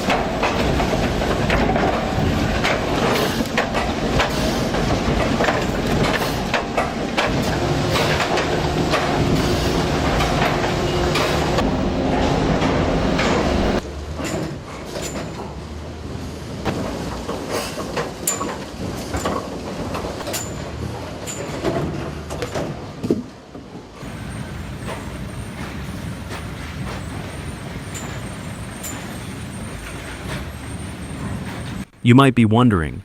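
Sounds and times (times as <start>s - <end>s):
sawmill machinery running: 0.0s - 13.8s.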